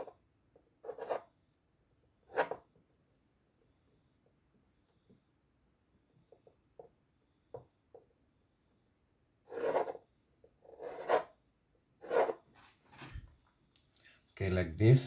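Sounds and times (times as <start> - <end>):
pencil scratching on paper: 0.8 - 1.3, 2.3 - 2.7, 9.5 - 11.4, 12.0 - 12.5.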